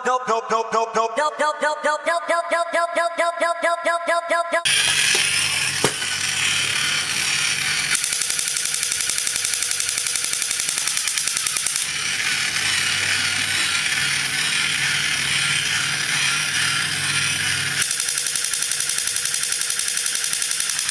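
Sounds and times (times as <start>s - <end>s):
fast mechanical clicking: 4.7s - 20.9s.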